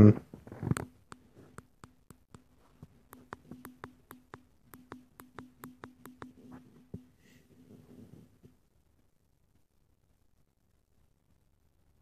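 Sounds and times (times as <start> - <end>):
low steady hum: 0.0 - 12.0
rapid sharp clicks: 3.1 - 6.4.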